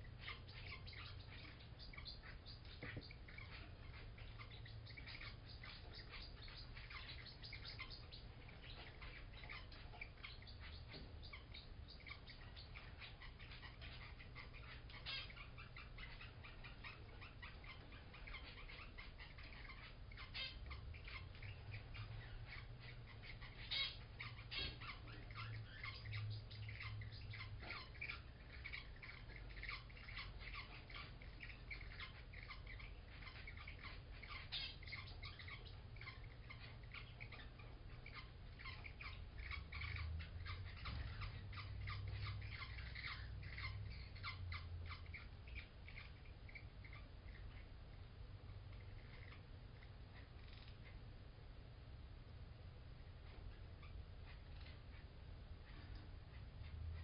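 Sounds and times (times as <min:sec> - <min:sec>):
birds squeaking rapidly: 0:00.0 - 0:51.2, 0:53.0 - 0:57.0
finches beeping calls: 0:00.0 - 0:51.2.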